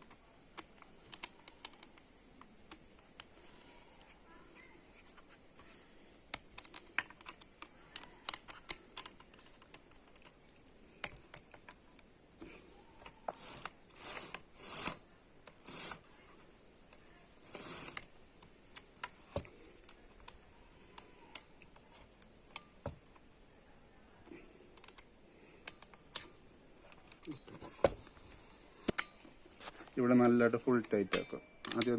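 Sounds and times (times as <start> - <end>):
small metal clicks and taps: 0.0 - 3.3, 6.3 - 12.1, 24.7 - 27.5, 30.8 - 31.9.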